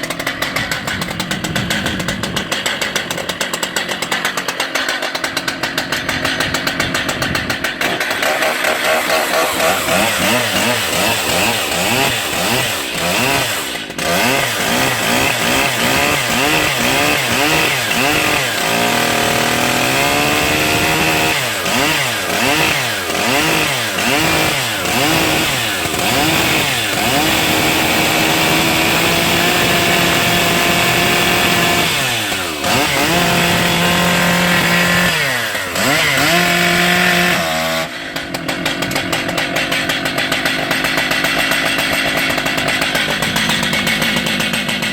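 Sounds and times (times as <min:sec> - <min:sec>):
chainsaw revving: 0:00.0 - 0:44.9.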